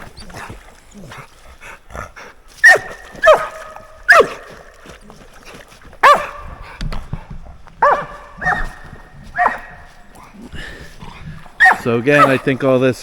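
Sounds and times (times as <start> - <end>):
dog barking: 2.6 - 4.5, 6.0 - 6.5, 7.8 - 10.0, 11.6 - 12.5.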